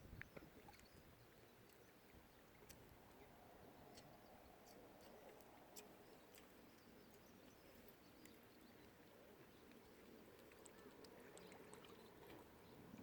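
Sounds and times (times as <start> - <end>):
lakeside ambience: 0.0 - 13.0.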